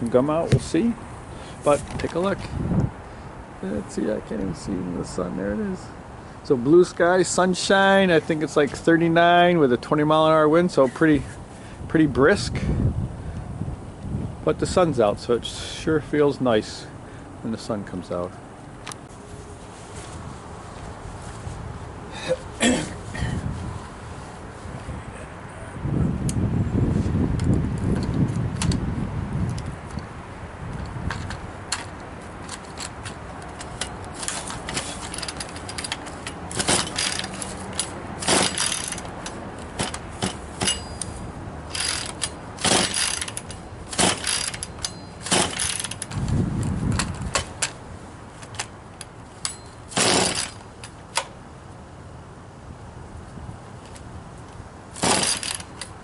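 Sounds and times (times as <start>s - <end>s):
wind rumbling on microphone: 0.0s - 5.7s, 11.2s - 16.0s, 23.0s - 39.9s, 40.6s - 48.3s, 52.6s - 54.8s
chainsaw pull-starter whirring: 31.2s - 47.8s, 49.4s - 51.3s, 54.9s - 56.0s.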